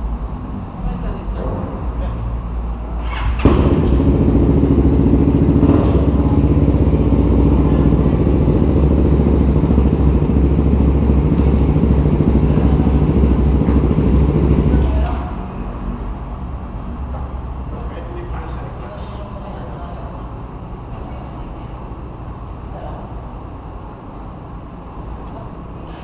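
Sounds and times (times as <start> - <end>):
motorcycle engine running loudly: 3.4 - 15.2.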